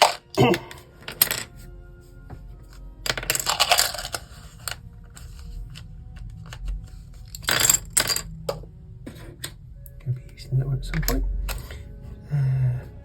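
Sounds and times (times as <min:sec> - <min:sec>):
plastic bricks rattling: 0:00.0 - 0:01.5, 0:03.1 - 0:08.3
faint background music: 0:00.0 - 0:13.0.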